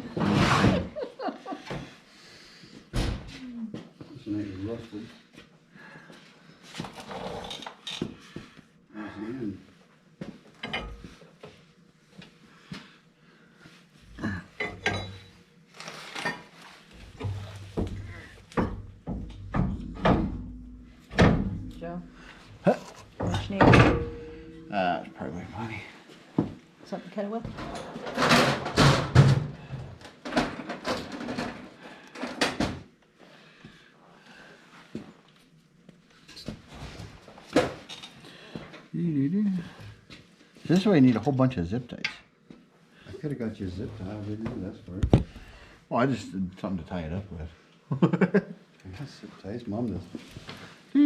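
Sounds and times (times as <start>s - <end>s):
metal tools clinking and clattering: 14.6s - 15.3s
tools clanking and scraping: 14.6s - 26.0s, 27.5s - 29.5s.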